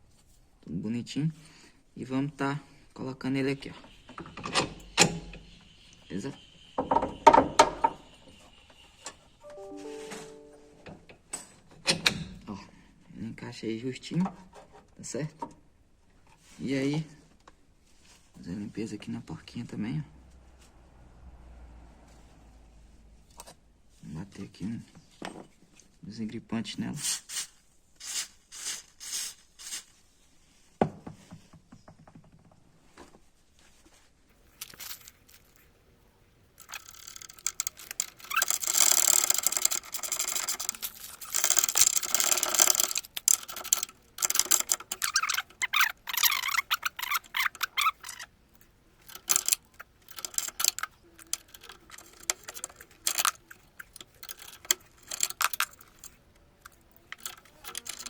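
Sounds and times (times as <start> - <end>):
small metallic clicks: 34.4 - 58.0.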